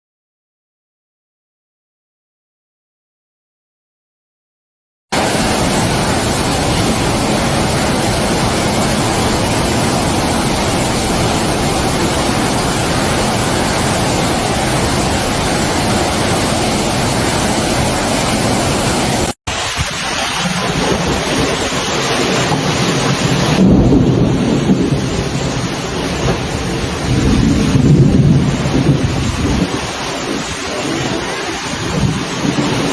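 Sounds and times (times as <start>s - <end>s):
heavy rain pouring: 5.1s - 32.9s.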